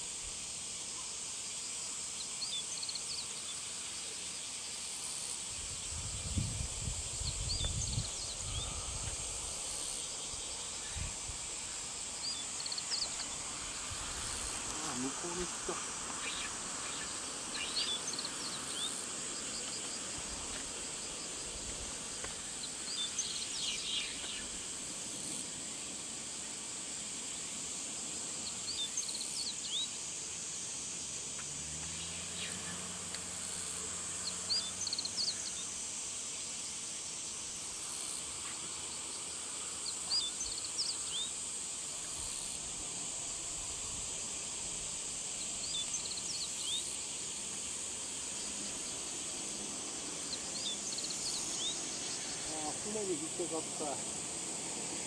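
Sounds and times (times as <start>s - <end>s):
insects droning: 0.0s - 55.0s.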